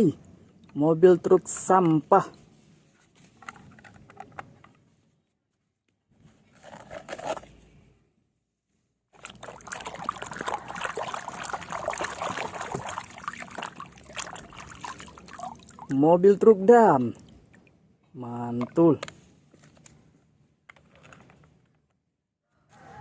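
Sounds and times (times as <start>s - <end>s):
water pouring and splashing: 9.1s - 16.0s.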